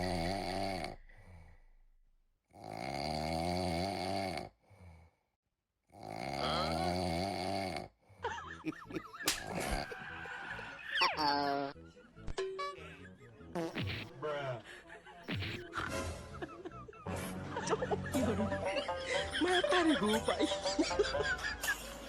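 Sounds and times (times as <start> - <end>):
person snoring loudly: 0.0 - 1.6, 2.5 - 5.2, 5.9 - 8.2.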